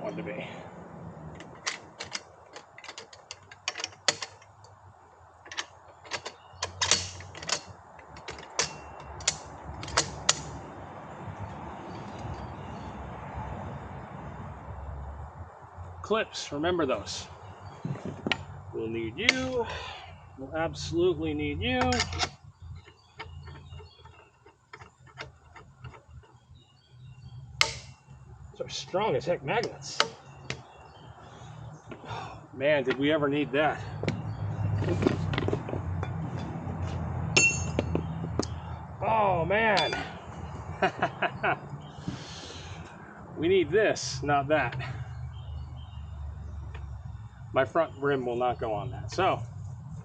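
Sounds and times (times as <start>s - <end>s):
metal parts clicking and clanking: 1.2s - 10.6s, 19.2s - 19.8s, 21.6s - 28.2s, 29.6s - 30.7s, 33.9s - 38.8s, 39.7s - 40.6s.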